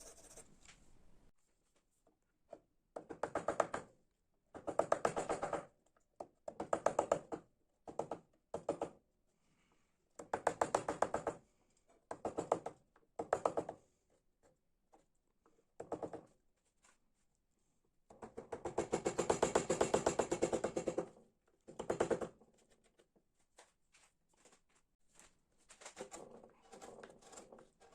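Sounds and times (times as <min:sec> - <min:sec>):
rapid tapping of wood carving: 0:03.0 - 0:03.9, 0:04.5 - 0:09.0, 0:10.2 - 0:11.4, 0:12.1 - 0:13.9, 0:15.8 - 0:16.3, 0:18.1 - 0:22.4, 0:26.0 - 0:27.9.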